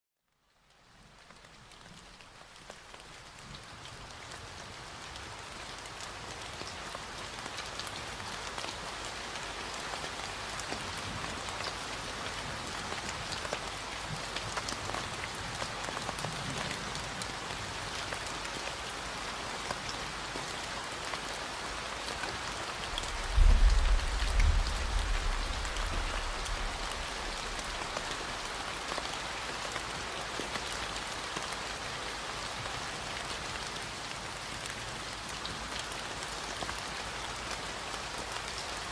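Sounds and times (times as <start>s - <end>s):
steady rain falling: 0.3s - 38.9s
deep low rumble: 23.0s - 27.2s.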